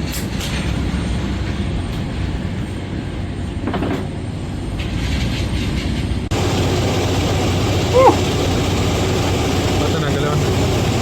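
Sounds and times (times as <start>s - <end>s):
jet engines rumbling: 6.2s - 11.0s.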